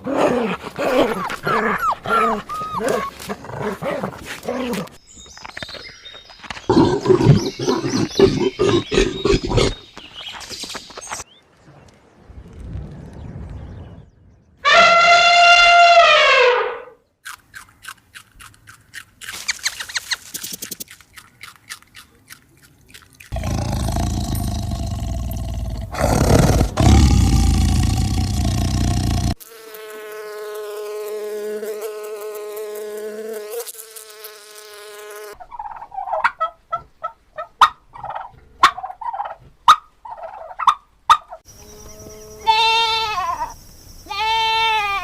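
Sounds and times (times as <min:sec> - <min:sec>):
animal rapid clicking: 0:19.4 - 0:22.1.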